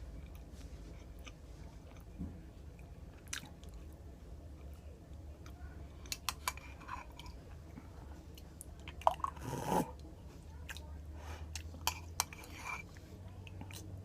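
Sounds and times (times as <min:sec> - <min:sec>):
person chewing food: 0:00.1 - 0:03.9, 0:10.7 - 0:14.0.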